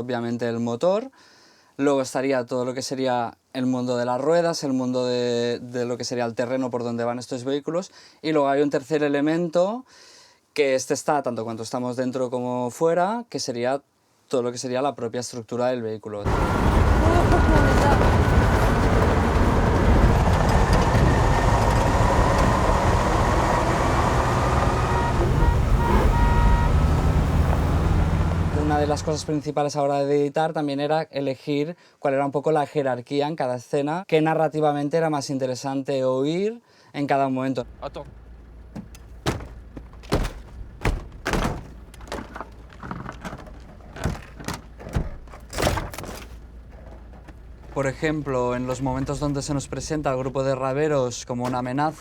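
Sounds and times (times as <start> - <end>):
tyre and ground noise: 16.2 - 29.5, 37.6 - 52.0
knocks and thuds: 16.3 - 29.4, 37.6 - 52.0
heavy vehicle engine rumble: 16.3 - 29.5, 37.6 - 52.0
metal body rattling: 16.3 - 29.5, 37.6 - 52.0.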